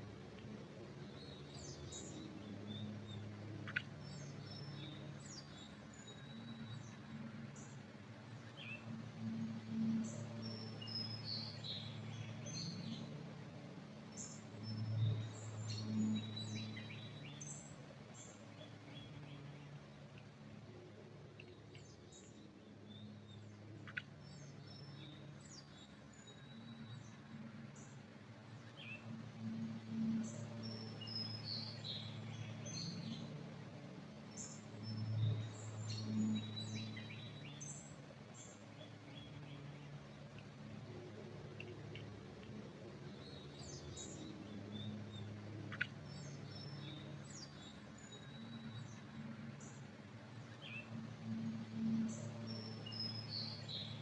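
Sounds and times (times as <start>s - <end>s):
low steady hum: 0.0s - 54.0s
songbirds chirping: 0.0s - 54.0s.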